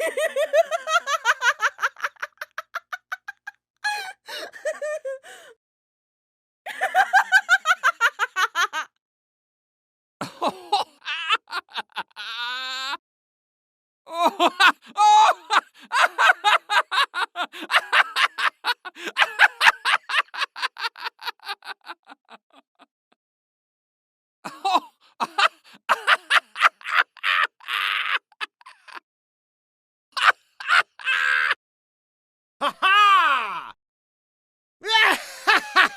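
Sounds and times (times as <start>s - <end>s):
person laughing: 0.0s - 5.5s, 6.7s - 8.9s, 10.2s - 13.0s, 14.1s - 22.9s, 24.5s - 29.0s, 34.8s - 35.9s.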